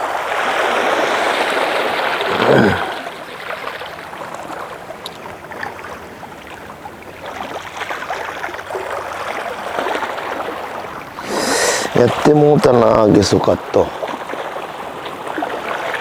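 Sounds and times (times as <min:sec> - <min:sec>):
short low vocal sound: 0:02.3 - 0:03.0
watery hiss: 0:11.2 - 0:12.2.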